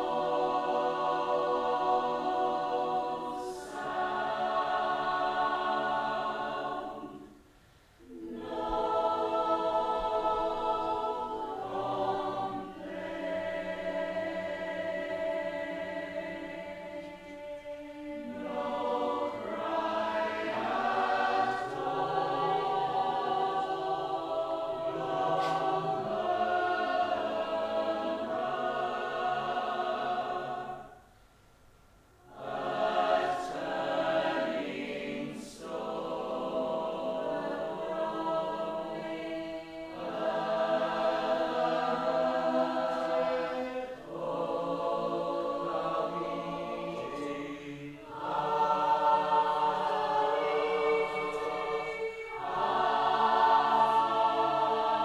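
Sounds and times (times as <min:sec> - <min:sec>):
choir singing: 0:00.0 - 0:31.1, 0:32.2 - 0:55.0.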